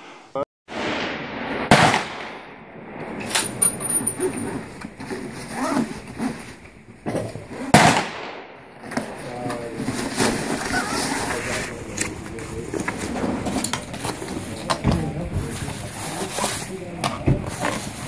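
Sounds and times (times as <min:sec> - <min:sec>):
rifle shots with echo: 0:00.7 - 0:03.8, 0:07.7 - 0:09.3.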